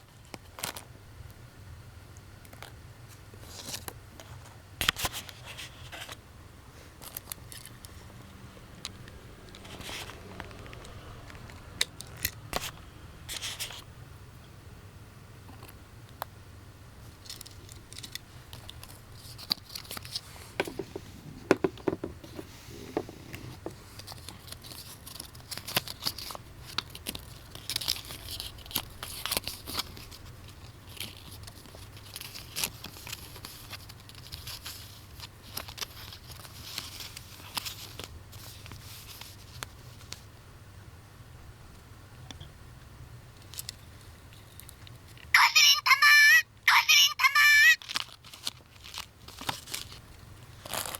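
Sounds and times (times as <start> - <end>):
plastic wrapping crinkling and tearing: 24.0 - 39.6, 47.8 - 50.9.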